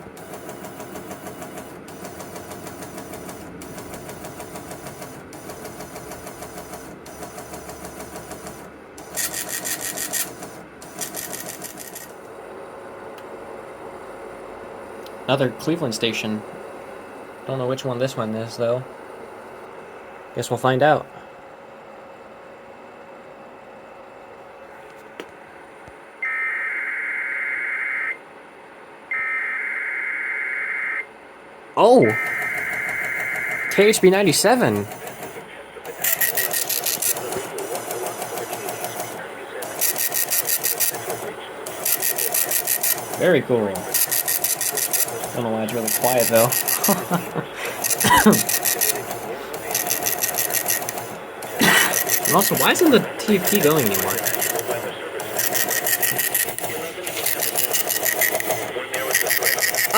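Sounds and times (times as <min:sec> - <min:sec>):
harsh digital data bursts: 0:00.2 - 0:12.1, 0:32.0 - 0:59.9
shrill data tones: 0:26.2 - 0:28.2, 0:29.1 - 0:31.1, 0:31.8 - 0:34.8
steady high tone: 0:31.8 - 0:34.8
radio static: 0:31.8 - 0:59.9.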